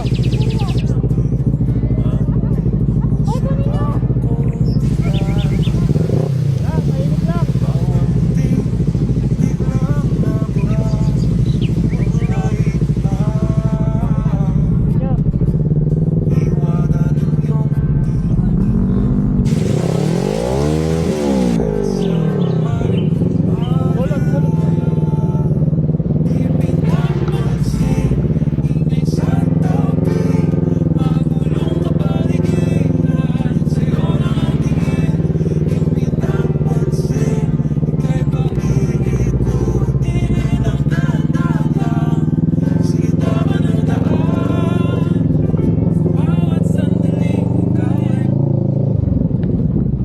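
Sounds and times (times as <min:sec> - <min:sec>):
motorcycle engine revving: 0:00.0 - 0:50.0
loud rushing hiss: 0:04.8 - 0:14.1, 0:19.5 - 0:21.7, 0:26.3 - 0:28.7, 0:33.6 - 0:35.9
music playing: 0:04.8 - 0:14.7, 0:19.5 - 0:22.4, 0:26.3 - 0:29.2, 0:29.8 - 0:37.9.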